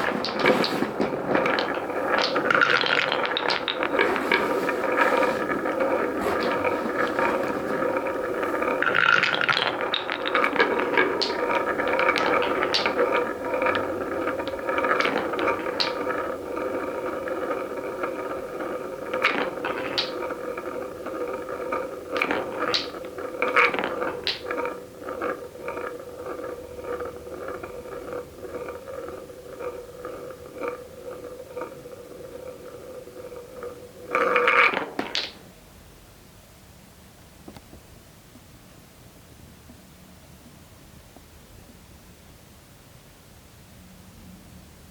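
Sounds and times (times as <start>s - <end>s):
marbles rolling down wooden run: 0.0s - 35.5s.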